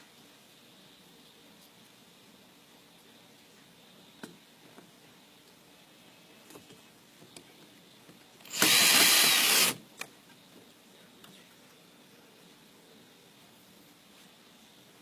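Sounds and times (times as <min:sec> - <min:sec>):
power screwdriver running: 0:08.5 - 0:09.8.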